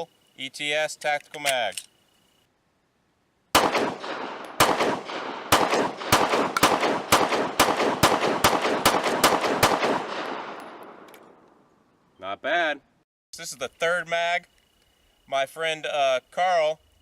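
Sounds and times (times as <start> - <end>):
pistol shots ringing out: 3.6 - 11.4.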